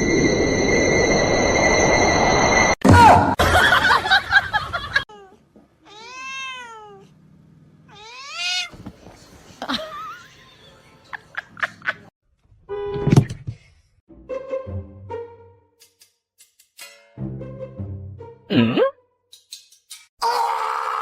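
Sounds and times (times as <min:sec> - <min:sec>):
cat meowing: 0:05.1 - 0:07.1, 0:07.9 - 0:08.8.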